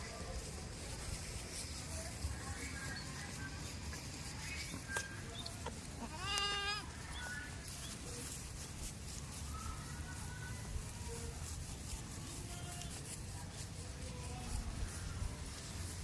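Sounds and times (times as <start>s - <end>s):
goat bleating: 4.9s - 7.0s.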